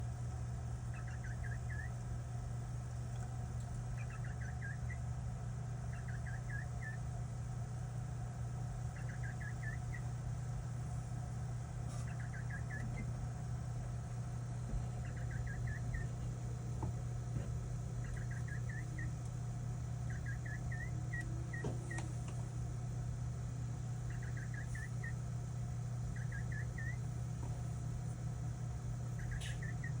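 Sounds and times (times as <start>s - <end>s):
steady low hum: 0.0s - 30.0s
high chirps from computer: 20.1s - 22.0s, 26.1s - 27.0s.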